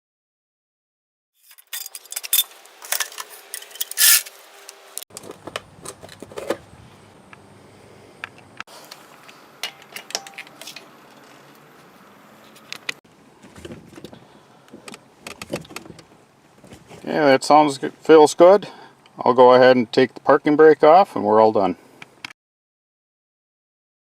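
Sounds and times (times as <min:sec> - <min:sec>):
metallic clicks of tools: 0:01.5 - 0:04.3.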